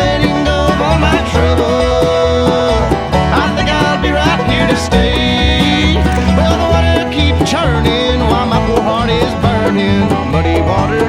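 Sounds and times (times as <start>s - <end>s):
country background music: 0.0s - 11.0s
plucked strings over a beat: 2.6s - 10.4s.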